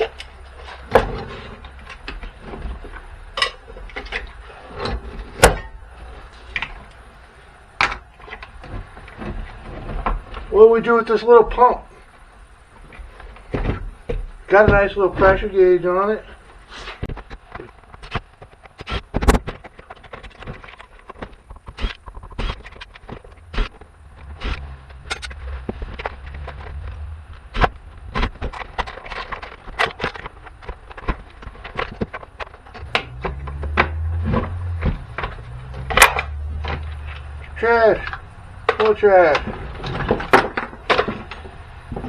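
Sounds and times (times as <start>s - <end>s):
low hum: 22.0s - 31.6s, 32.4s - 42.0s
hand tools clicking on small parts: 24.5s - 25.4s.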